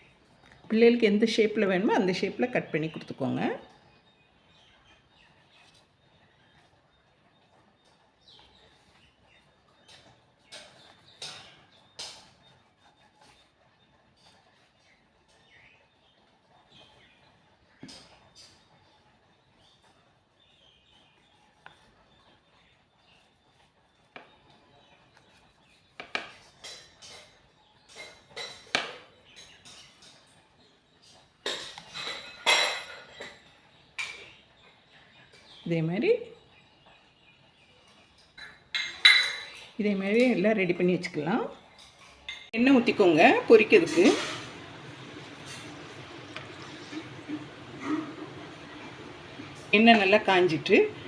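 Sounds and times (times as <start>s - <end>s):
knife scraping plate: 43.8s - 49.6s.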